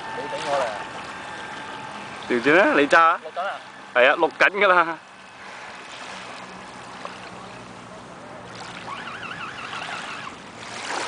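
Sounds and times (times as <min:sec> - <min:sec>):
model boat motor humming: 0:00.0 - 0:11.0
outdoor noise: 0:00.0 - 0:11.0
warbling whistle-like tone: 0:08.6 - 0:10.4.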